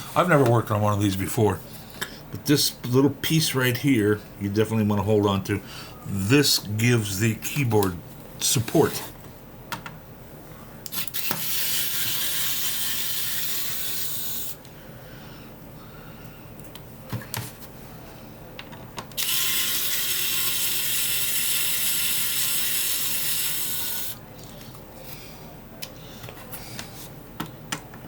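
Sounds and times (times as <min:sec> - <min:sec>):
electric screwdriver running: 0:19.2 - 0:24.2.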